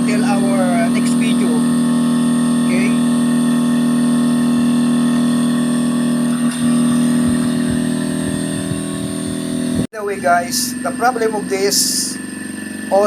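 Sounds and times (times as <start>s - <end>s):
air conditioner humming: 0.0s - 5.2s.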